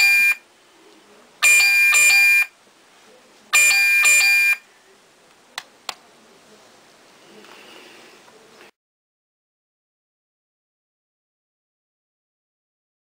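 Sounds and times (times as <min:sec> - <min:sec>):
alarm clock beeping: 0:00.0 - 0:00.4, 0:01.4 - 0:02.5, 0:03.6 - 0:04.6.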